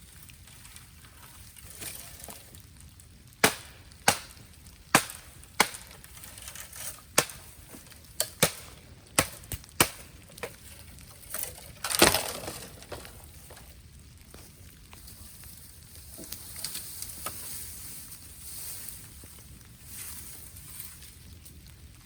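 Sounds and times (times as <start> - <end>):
bamboo cracking: 0.0 - 18.2
woody crackling burst: 1.4 - 16.0.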